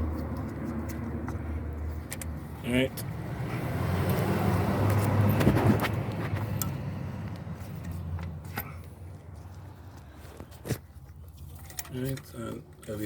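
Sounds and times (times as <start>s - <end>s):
vehicle passing by: 0.0s - 10.1s.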